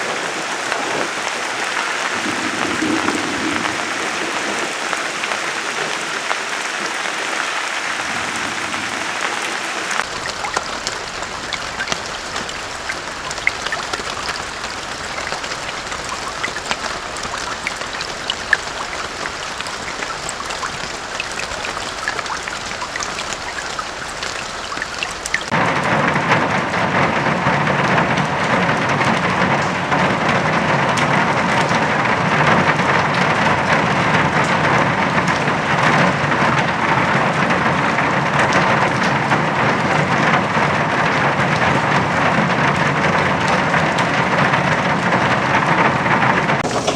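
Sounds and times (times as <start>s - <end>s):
heavy downpour: 0.0s - 46.9s
rain falling: 0.0s - 46.9s
raindrops ticking on a surface: 0.0s - 46.9s.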